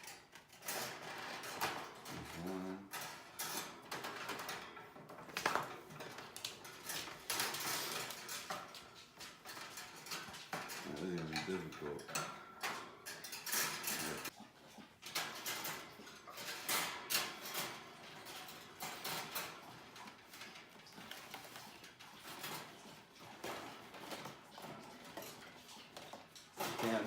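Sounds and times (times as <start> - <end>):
rustling and scraping: 0.0 - 27.0
birds shuffling: 0.3 - 27.0.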